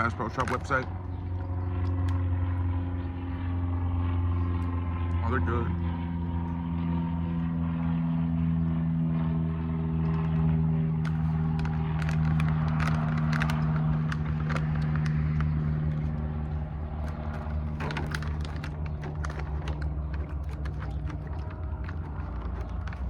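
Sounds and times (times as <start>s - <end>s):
car engine idling: 9.9s - 23.0s
person chewing jerky: 10.0s - 23.0s.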